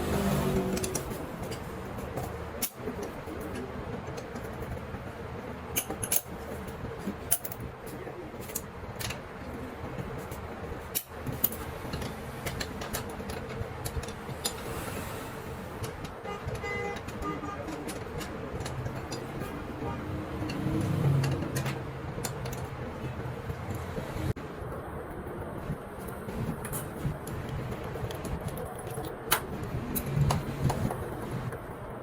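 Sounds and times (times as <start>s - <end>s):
metallic clicks of tools: 0.6s - 1.6s.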